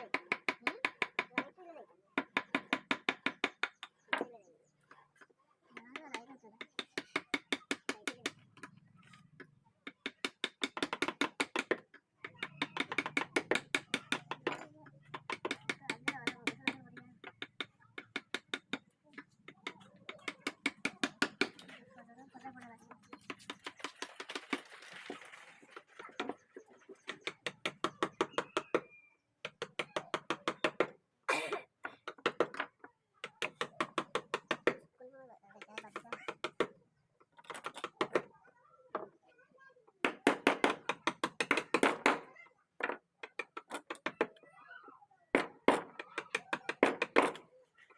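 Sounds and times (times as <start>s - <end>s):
mallet tapping carving chisel: 0.0s - 1.5s, 2.2s - 4.2s, 5.8s - 8.7s, 9.8s - 21.7s, 27.0s - 30.9s, 32.0s - 34.8s, 40.0s - 42.2s, 45.4s - 47.4s.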